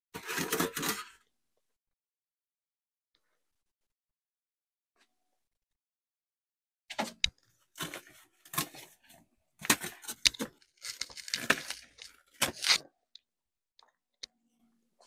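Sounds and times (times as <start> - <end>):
packaging tearing and crinkling: 9.7 - 12.8.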